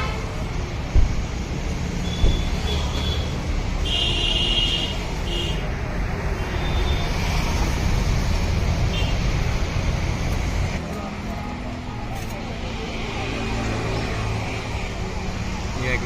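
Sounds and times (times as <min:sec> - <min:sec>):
street traffic rumble: 0:00.0 - 0:16.0.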